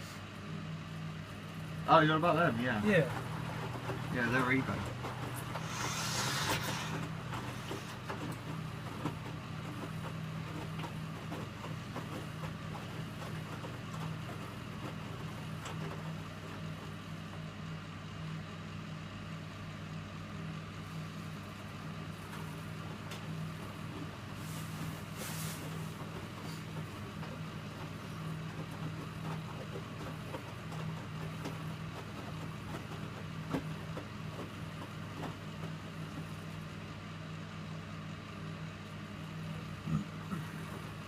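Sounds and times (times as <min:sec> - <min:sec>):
washing machine running: 0:00.0 - 0:41.0
burst of hiss: 0:05.6 - 0:07.0.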